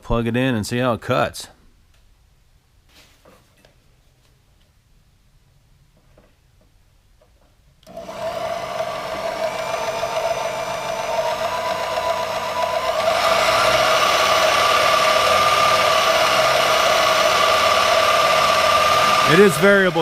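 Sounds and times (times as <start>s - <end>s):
band saw whining: 7.9s - 20.0s.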